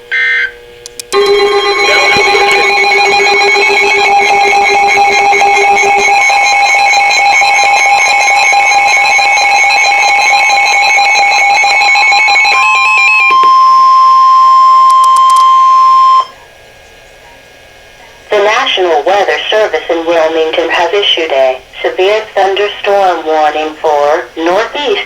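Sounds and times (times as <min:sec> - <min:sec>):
steady warning alarm tone: 0:00.0 - 0:16.4
warbling beeping alert tones: 0:01.2 - 0:15.4.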